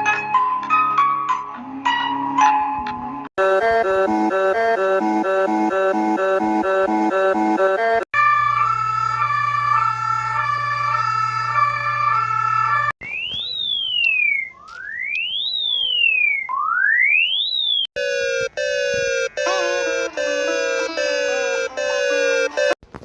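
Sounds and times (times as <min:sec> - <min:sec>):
electronic alert tones: 0:03.4 - 0:08.1, 0:15.4 - 0:22.8
rising and falling siren tone: 0:03.4 - 0:22.8.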